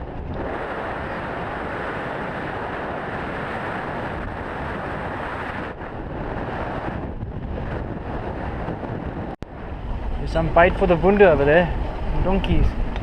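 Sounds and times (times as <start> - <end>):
boat and water noise: 0.0 - 13.0
wind on camera microphone: 0.0 - 13.0.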